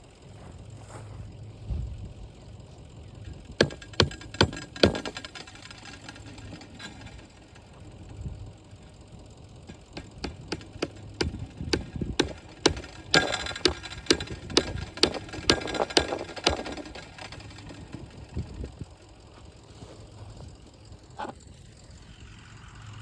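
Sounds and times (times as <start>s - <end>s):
knocks and clicks on wire fence: 3.6s - 7.3s, 9.7s - 18.3s.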